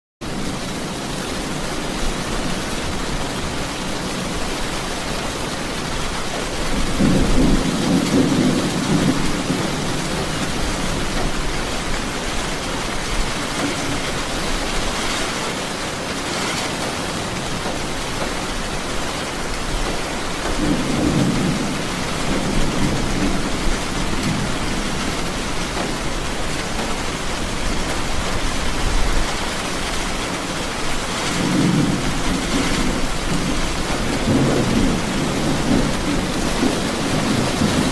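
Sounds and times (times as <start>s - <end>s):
steady rain falling: 0.2s - 37.9s
low rolling thunder: 6.3s - 15.5s, 19.7s - 30.0s, 30.6s - 37.9s.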